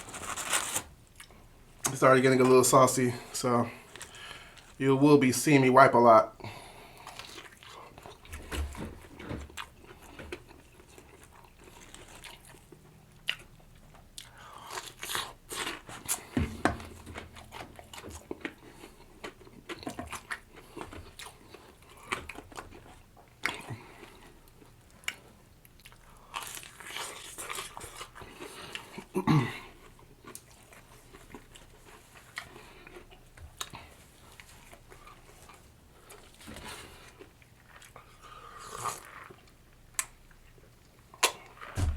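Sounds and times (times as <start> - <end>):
person chewing crunchy food: 6.9 - 41.7.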